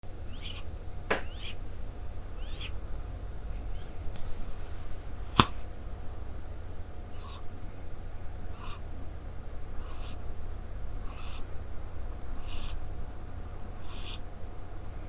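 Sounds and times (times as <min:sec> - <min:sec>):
low rumble: 0:00.2 - 0:07.1.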